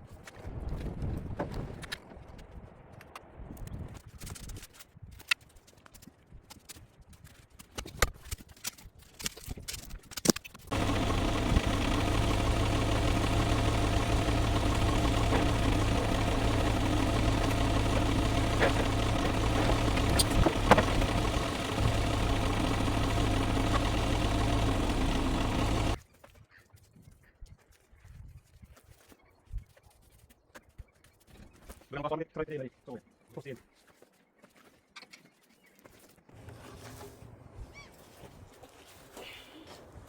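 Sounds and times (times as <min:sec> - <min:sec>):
engine idling: 0:10.7 - 0:26.0.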